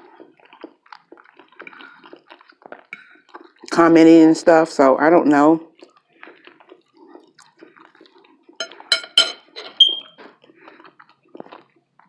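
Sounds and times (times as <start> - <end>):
person chewing food: 0.0 - 3.7, 5.7 - 12.0
brief ringing tone: 9.6 - 10.2.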